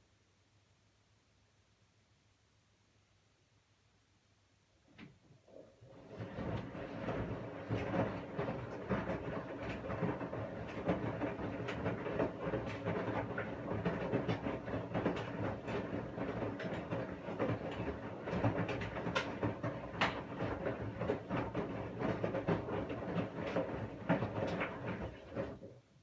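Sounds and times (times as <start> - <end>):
washing machine drum churning: 5.5 - 25.8
clicks and knocks in drum: 6.2 - 25.8.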